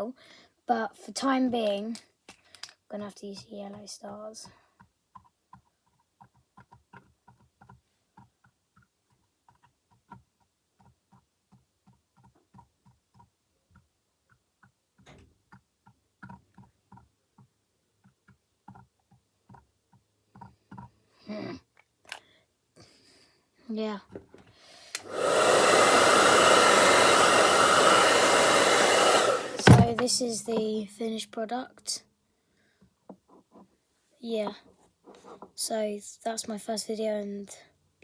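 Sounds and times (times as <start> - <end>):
louder knock: 29.6 - 30.0
marker tip tapping hard surface: 29.6 - 30.2.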